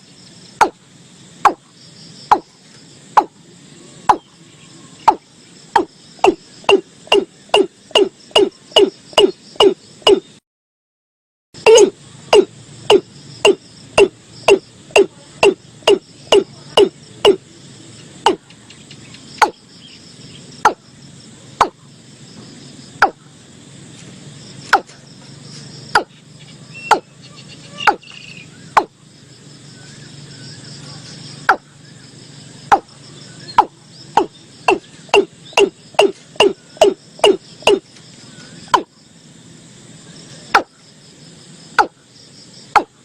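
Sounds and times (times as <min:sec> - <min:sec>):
high insect hum: 0:00.0 - 0:10.4, 0:11.6 - 0:43.0
bird calling deep notes: 0:04.0 - 0:10.4, 0:11.6 - 0:17.4, 0:25.9 - 0:29.1, 0:31.3 - 0:38.9.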